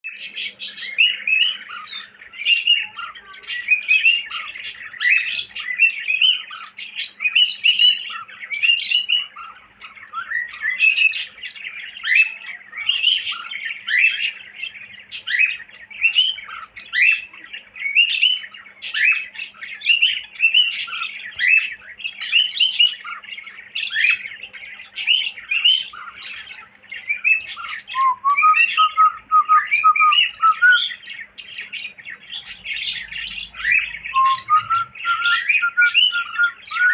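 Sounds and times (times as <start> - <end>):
cockatiel chirping and whistling: 0.3 - 14.4, 15.1 - 23.2, 23.8 - 24.2, 27.0 - 36.9.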